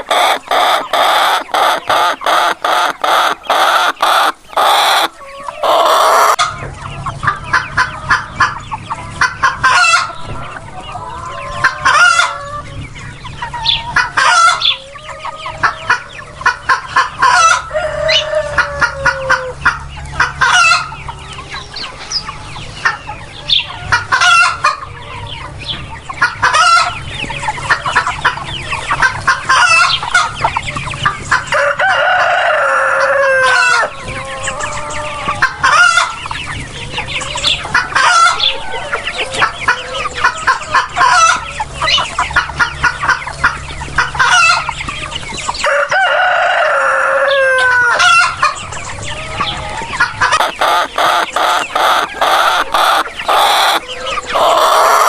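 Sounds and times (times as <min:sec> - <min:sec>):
chickens clucking: 0:00.0 - 0:55.0
rooster crowing: 0:04.6 - 0:06.4, 0:17.6 - 0:19.6, 0:31.5 - 0:35.4, 0:38.1 - 0:40.3, 0:45.6 - 0:48.4.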